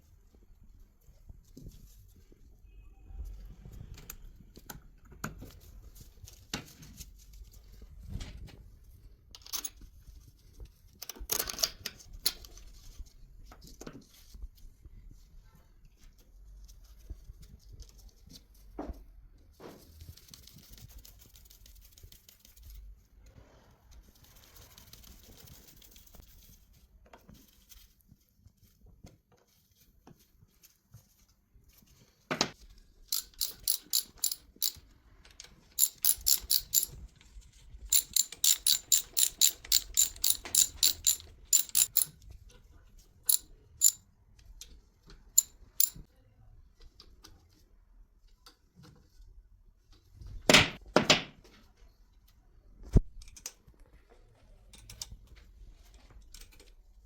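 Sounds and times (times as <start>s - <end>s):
ratchet wrench clicking: 33.1s - 34.8s, 35.8s - 36.9s, 37.9s - 42.1s, 43.3s - 44.0s, 45.4s - 46.0s.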